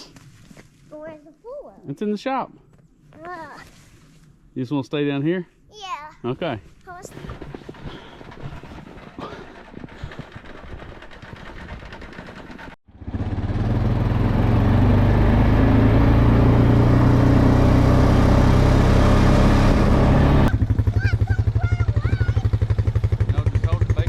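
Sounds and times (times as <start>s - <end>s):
faint outdoor rustling: 0.0s - 11.6s
atv engine running loudly: 7.1s - 24.0s.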